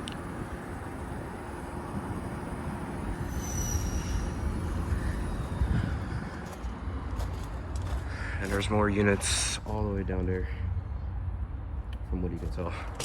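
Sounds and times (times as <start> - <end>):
air conditioner fan whoosh: 0.0 - 12.7
wind on microphone: 3.1 - 7.2.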